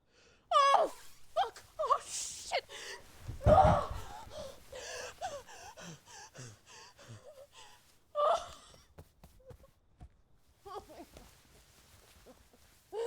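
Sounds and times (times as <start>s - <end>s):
woman gasping and whimpering: 0.5s - 8.8s.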